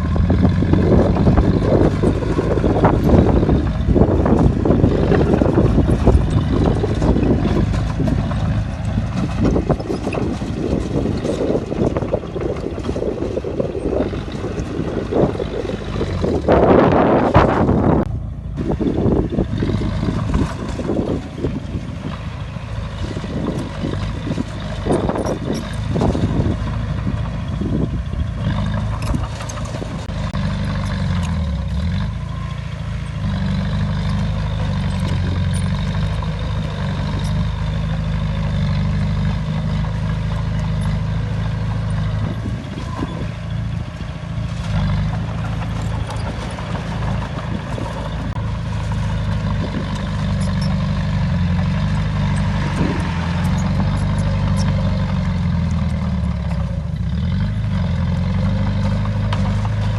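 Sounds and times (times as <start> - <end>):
bulldozer diesel engine running: 0.0 - 59.9.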